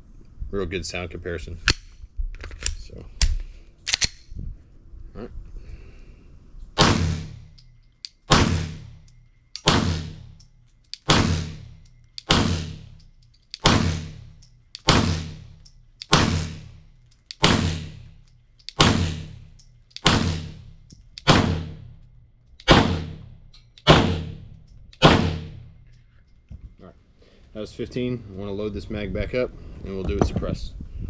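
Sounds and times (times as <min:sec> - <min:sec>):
pistol shots echoing: 0:06.8 - 0:07.5, 0:08.3 - 0:09.0, 0:09.6 - 0:10.4, 0:11.0 - 0:13.0, 0:13.6 - 0:16.8, 0:17.4 - 0:18.1, 0:18.7 - 0:22.0, 0:22.6 - 0:25.8.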